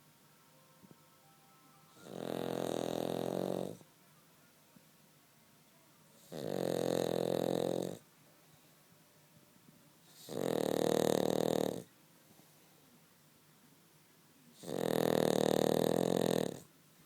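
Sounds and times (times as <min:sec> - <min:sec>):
dog snoring: 0:01.9 - 0:03.9, 0:06.2 - 0:08.1, 0:10.1 - 0:11.9, 0:14.6 - 0:16.7.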